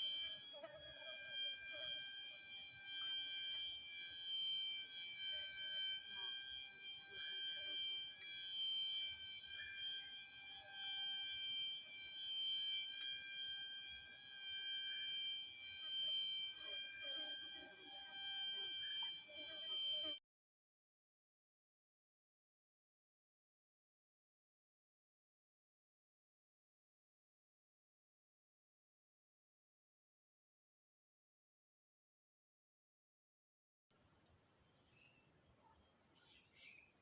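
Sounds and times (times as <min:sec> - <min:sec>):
insects calling in chorus: 0:00.0 - 0:12.9, 0:13.7 - 0:20.2, 0:33.9 - 0:37.0.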